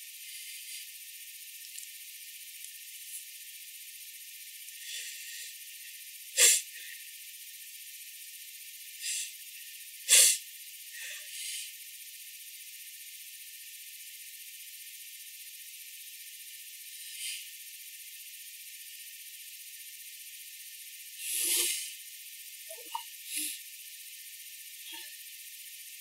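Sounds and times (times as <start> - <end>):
person sneezing: 6.4 - 6.6, 10.1 - 10.4.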